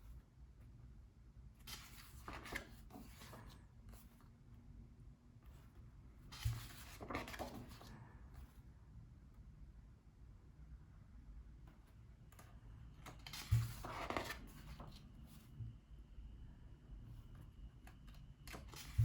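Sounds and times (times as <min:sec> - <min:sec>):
book pages turning: 0:01.6 - 0:04.3, 0:06.3 - 0:07.9, 0:11.7 - 0:15.6, 0:17.9 - 0:19.0.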